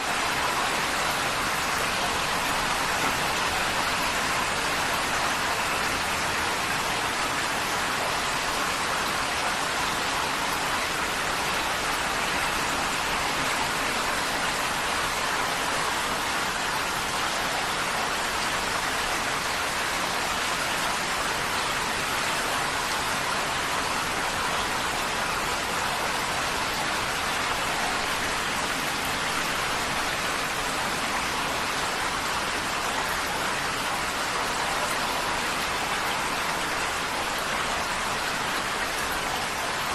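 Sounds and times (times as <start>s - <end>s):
heavy rain on a tin roof: 0.0s - 39.9s.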